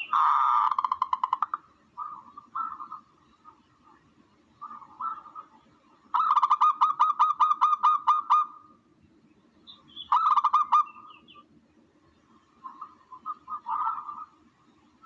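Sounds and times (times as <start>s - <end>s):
faint low hum: 0.0s - 15.0s
recorded bird call: 0.0s - 15.0s.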